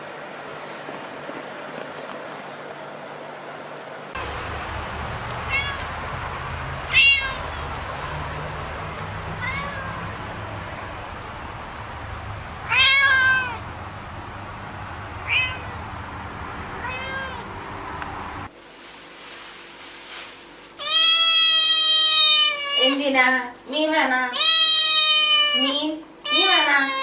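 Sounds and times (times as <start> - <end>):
steady low hum: 0.0 - 20.8
cat meowing: 5.5 - 5.9, 6.9 - 7.6, 9.4 - 10.1, 12.6 - 13.7, 15.2 - 15.8, 16.8 - 17.5, 20.8 - 23.0, 24.4 - 27.0.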